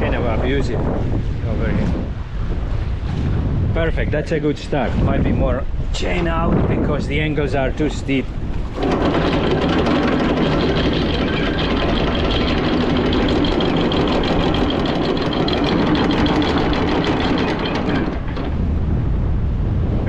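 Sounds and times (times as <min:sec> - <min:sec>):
windlass motor hum: 0:00.0 - 0:20.0
anchor chain rattling: 0:08.6 - 0:18.7.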